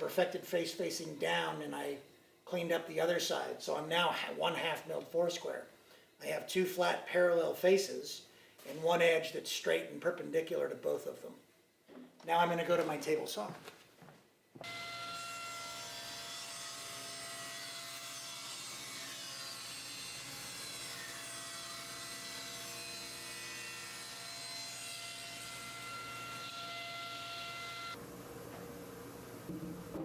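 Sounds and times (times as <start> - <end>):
table saw whining: 14.6 - 28.0.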